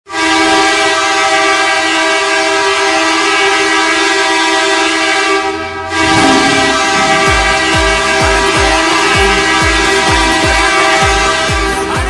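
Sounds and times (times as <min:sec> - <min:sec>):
goal horn blast: 0:00.1 - 0:11.9
song with a beat: 0:07.2 - 0:12.0.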